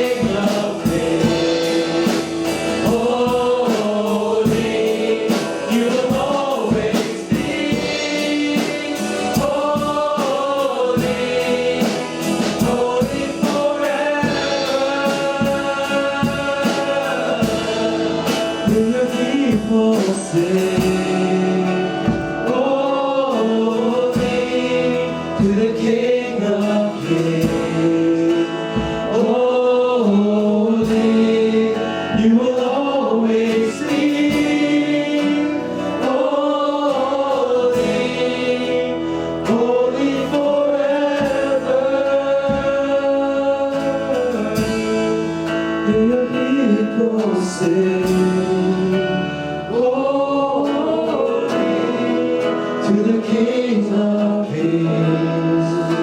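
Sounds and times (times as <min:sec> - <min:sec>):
steady beat: 0:00.0 - 0:22.6
worship band and singers: 0:00.0 - 0:56.0.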